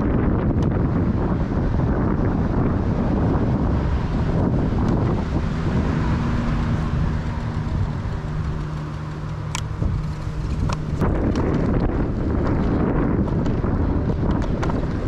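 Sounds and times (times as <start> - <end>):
low motor hum: 0.0 - 15.0
wind rumbling on microphone: 0.0 - 15.0
sharp clicks: 6.2 - 11.9.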